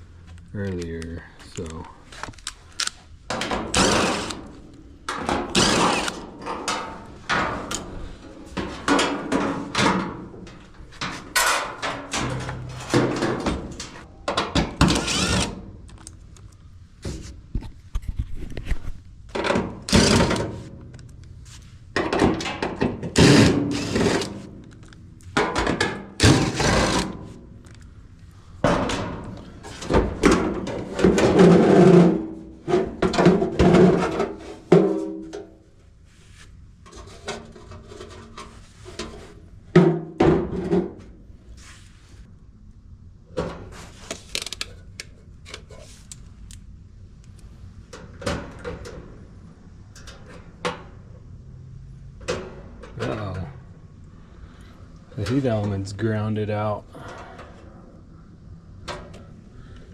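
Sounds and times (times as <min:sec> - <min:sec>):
sheet-metal panels scraping: 0:03.3 - 0:14.1, 0:19.5 - 0:20.8, 0:21.5 - 0:24.6, 0:25.5 - 0:27.4, 0:28.7 - 0:35.3
tools thunking and knocking: 0:21.9 - 0:23.3.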